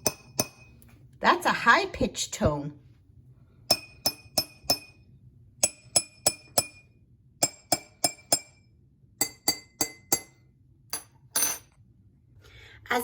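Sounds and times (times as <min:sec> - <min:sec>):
spoon tapping ringing glasses: 0:00.0 - 0:00.8, 0:03.7 - 0:05.0, 0:05.6 - 0:08.6, 0:09.2 - 0:11.7.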